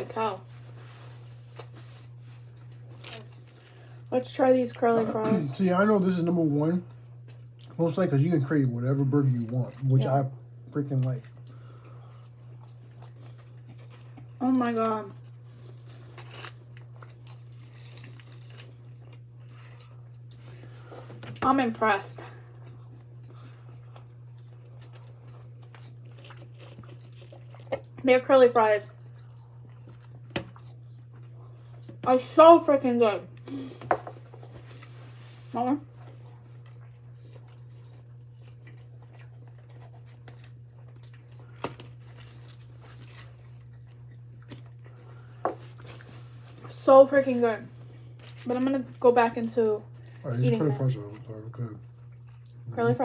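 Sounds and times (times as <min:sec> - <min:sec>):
food rustling: 0:00.0 - 0:03.9, 0:33.7 - 0:36.2, 0:44.6 - 0:48.6
chewing crunchy fries: 0:00.0 - 0:33.6, 0:34.2 - 0:53.0
steady low hum: 0:00.0 - 0:53.0.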